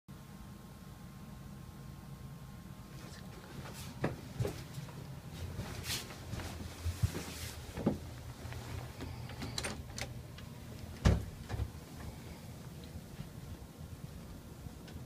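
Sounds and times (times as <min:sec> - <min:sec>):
footsteps crunching in snow: 0:03.0 - 0:07.8.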